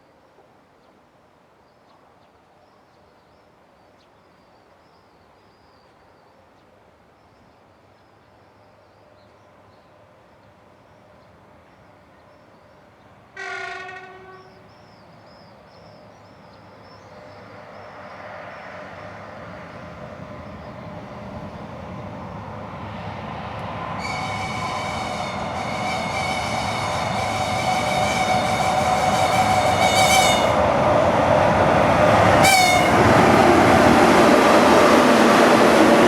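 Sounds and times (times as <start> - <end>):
freight train rumble: 12.8 - 36.0
locomotive horn blast: 13.4 - 14.7, 23.8 - 30.8, 31.8 - 33.4.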